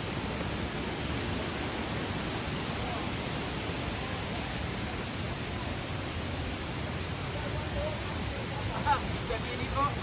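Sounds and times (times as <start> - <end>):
river water rushing: 0.0 - 10.0.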